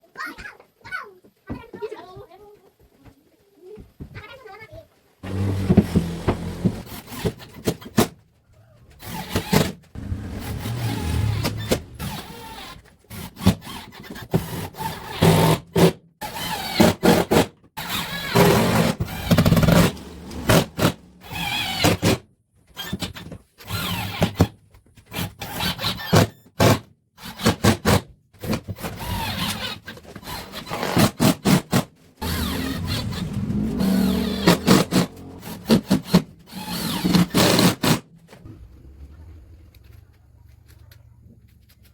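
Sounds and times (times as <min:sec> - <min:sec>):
power tools working wood: 0:05.2 - 0:07.9, 0:09.0 - 0:12.8, 0:17.8 - 0:22.1, 0:32.2 - 0:38.7.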